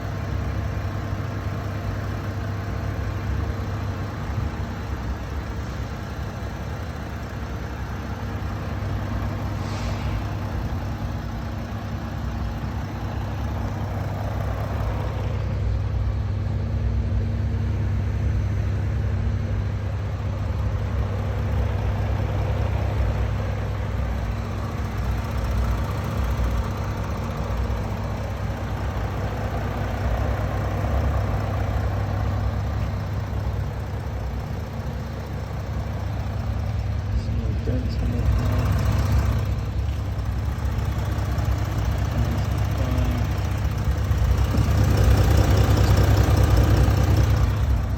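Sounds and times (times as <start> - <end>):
diesel engine idling: 0.0 - 47.9.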